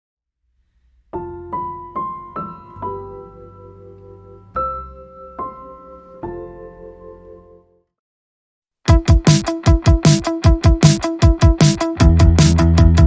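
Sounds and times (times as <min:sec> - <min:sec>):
slow piano tune: 0:01.1 - 0:07.8.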